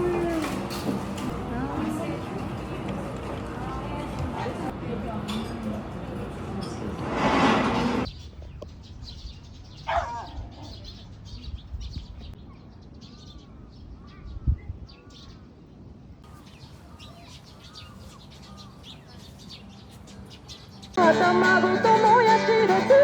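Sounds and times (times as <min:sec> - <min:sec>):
small birds chirping: 0:08.0 - 0:21.0.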